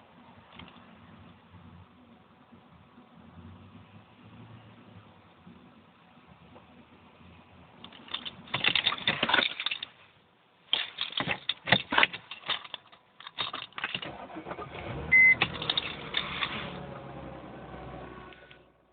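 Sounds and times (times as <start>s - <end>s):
rapid clicking and rattling: 7.8s - 10.0s, 10.7s - 14.3s, 15.4s - 16.6s
short high beep: 15.1s - 15.4s.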